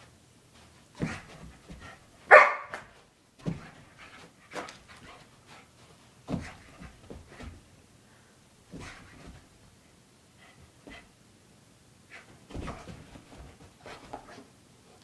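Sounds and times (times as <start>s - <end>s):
dog paws thumping: 0.5s - 7.8s, 8.6s - 9.8s, 12.1s - 14.4s
dog barking: 2.3s - 2.9s.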